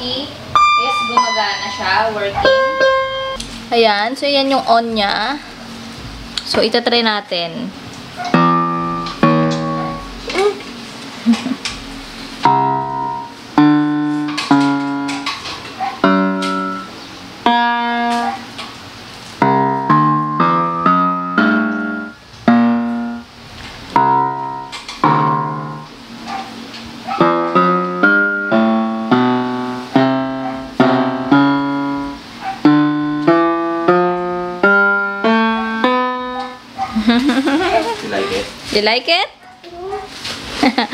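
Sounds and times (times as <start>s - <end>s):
electronic keyboard piano tune: 0.0s - 4.0s, 8.2s - 10.6s, 11.8s - 26.3s, 27.0s - 36.8s.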